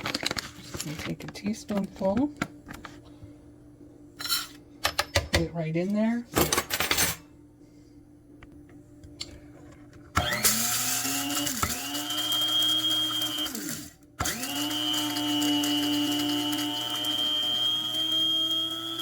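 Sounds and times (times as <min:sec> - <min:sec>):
electric coffee grinder whine: 0:10.1 - 0:19.0.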